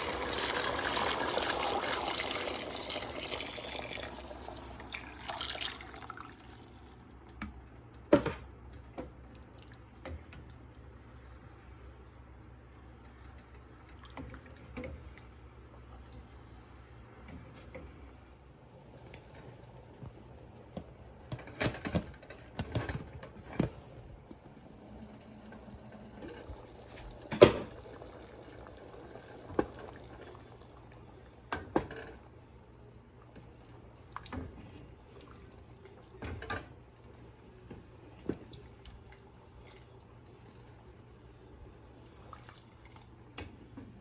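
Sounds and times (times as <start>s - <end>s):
liquid sounds: 24.8s - 43.4s.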